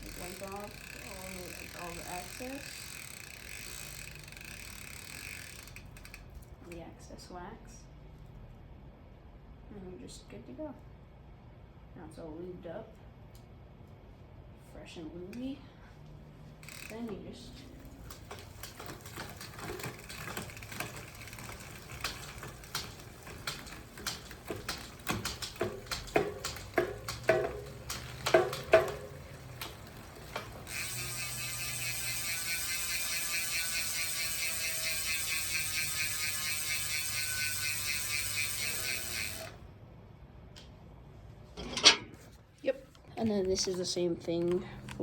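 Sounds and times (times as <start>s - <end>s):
bike freewheel ratcheting: 0.0s - 6.7s, 16.6s - 39.6s.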